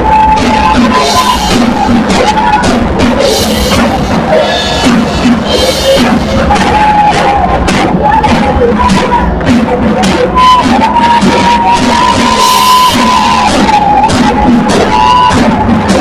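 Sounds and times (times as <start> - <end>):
drum hits: 0.0 - 16.0
live worship music: 0.0 - 16.0
cymbal crashes: 0.8 - 7.5.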